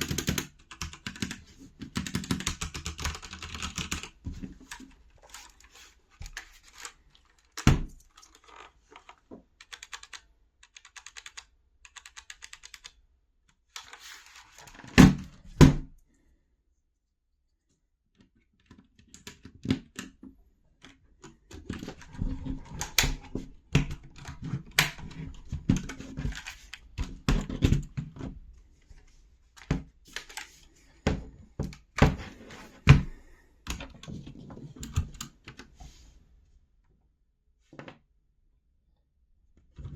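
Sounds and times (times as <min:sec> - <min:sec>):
mechanical keyboard typing: 0:00.0 - 0:05.4, 0:06.6 - 0:13.0.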